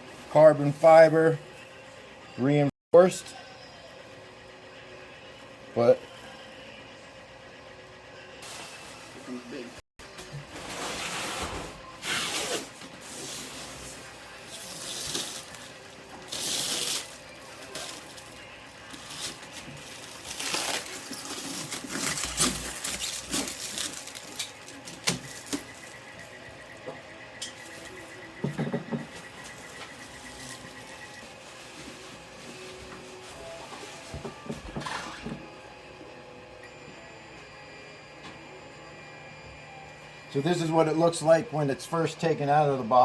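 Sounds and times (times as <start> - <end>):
foam and plastic rustling: 10.4 - 26.0, 29.4 - 34.2.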